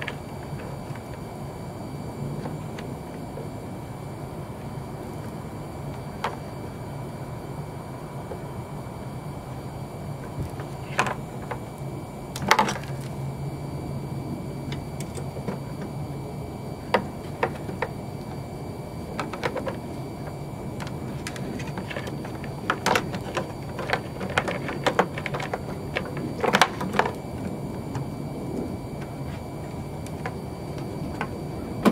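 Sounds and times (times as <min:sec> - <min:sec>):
steady low hum: 0:00.0 - 0:31.9
parts clicking and knocking: 0:19.1 - 0:19.8, 0:20.8 - 0:27.2.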